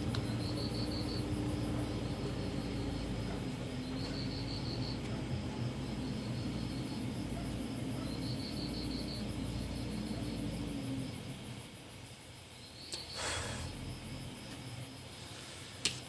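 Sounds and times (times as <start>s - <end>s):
low steady hum: 0.0s - 15.8s
faint insect chirping: 0.0s - 16.0s.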